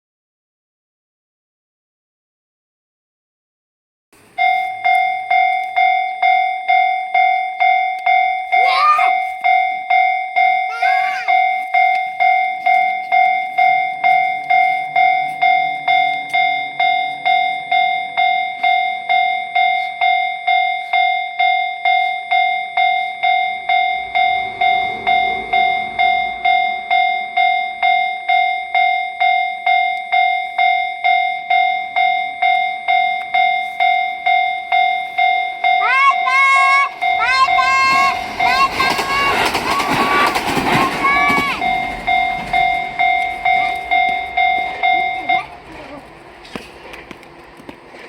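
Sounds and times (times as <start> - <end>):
level-crossing bell ringing: 4.3 - 46.1
low rumble: 22.8 - 28.8, 36.9 - 48.0.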